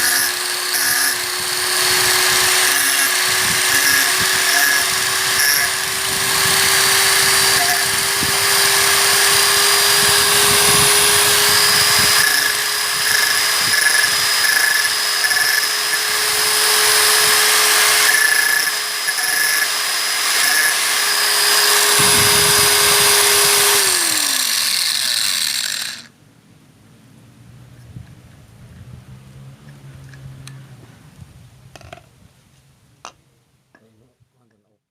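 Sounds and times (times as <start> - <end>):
angle grinder running: 0.0 - 26.1.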